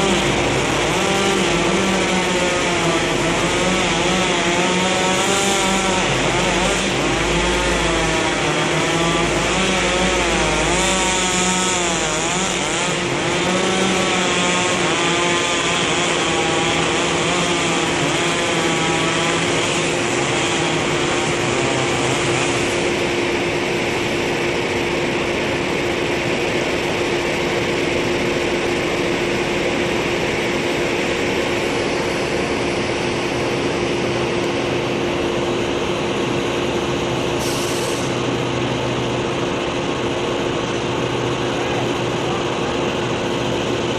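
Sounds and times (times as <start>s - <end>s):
chainsaw cutting: 0.0s - 36.2s
machinery engine hum: 0.0s - 43.9s.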